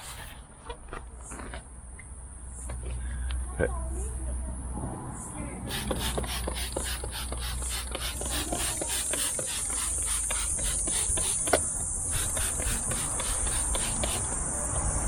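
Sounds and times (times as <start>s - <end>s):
crickets chirping: 1.2s - 15.0s
rhythmic rasping strokes: 5.7s - 14.6s.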